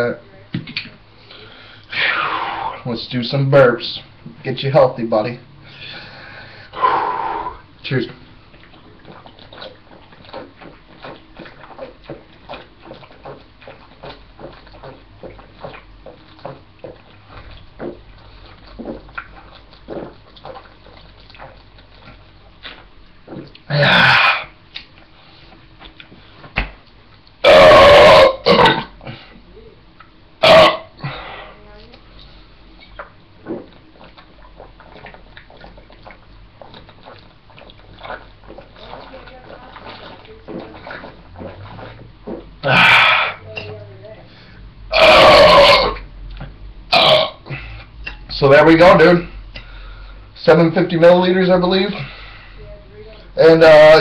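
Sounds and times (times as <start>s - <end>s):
person gulping a drink: 8.5s - 26.2s, 27.2s - 32.0s, 32.7s - 43.7s, 44.9s - 48.3s.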